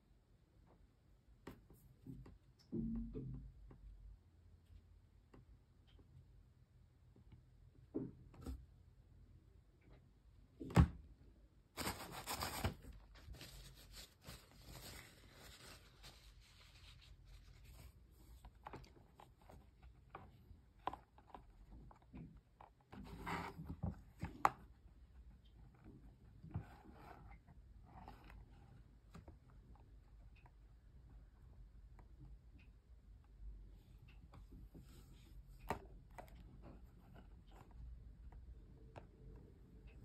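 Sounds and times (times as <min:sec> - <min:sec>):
packaging rustling: 0:11.8 - 0:17.1.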